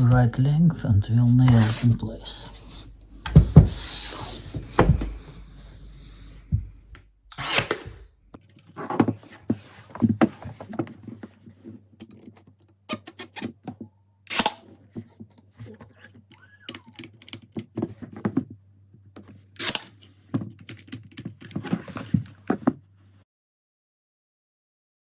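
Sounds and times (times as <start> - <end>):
wooden knocks and thuds: 3.2 - 3.9, 4.5 - 5.3.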